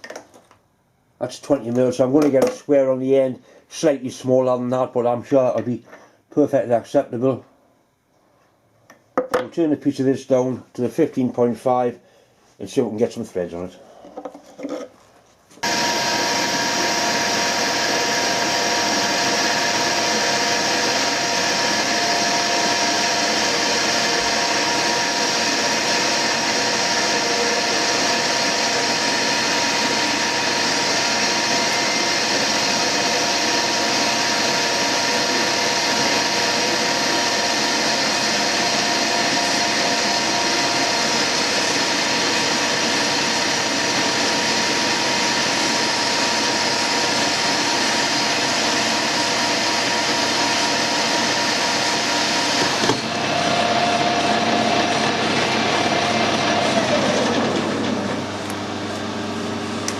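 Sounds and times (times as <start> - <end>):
metal lathe whining: 15.6 - 59.6.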